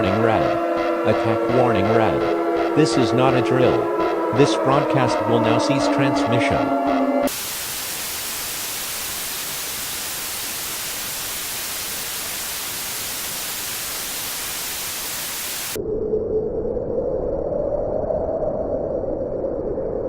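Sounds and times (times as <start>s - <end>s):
broadcast static hiss: 7.3s - 15.8s.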